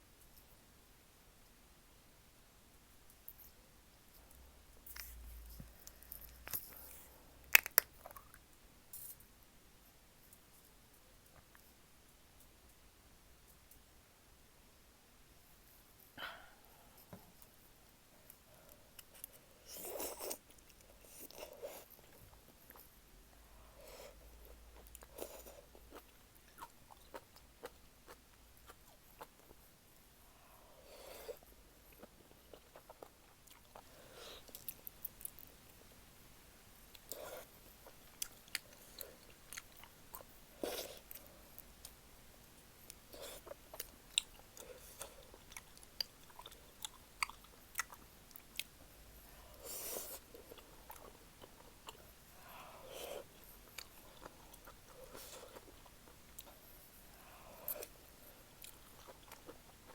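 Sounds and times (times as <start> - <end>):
wet chewing sounds: 42.9 - 48.8.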